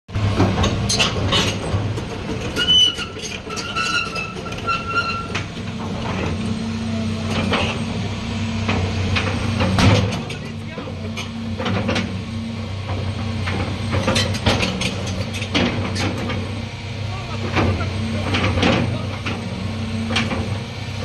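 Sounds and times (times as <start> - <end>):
excavator diesel engine droning: 0.1 - 21.0
metal clanks and knocks: 0.3 - 6.5, 7.3 - 8.0, 8.6 - 12.2, 12.8 - 16.6, 17.4 - 20.6
high squeal: 2.6 - 5.4.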